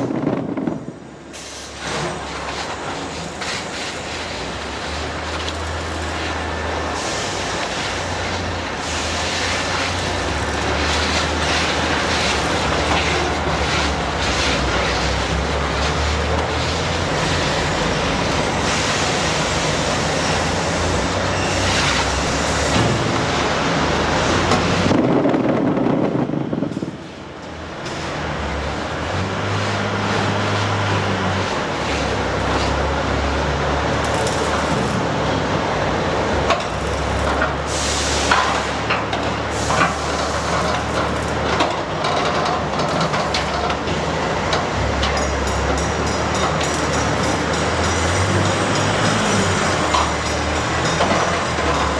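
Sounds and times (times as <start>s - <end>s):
knocks and clanks: 0.0s - 1.0s
factory machinery running: 0.0s - 51.9s.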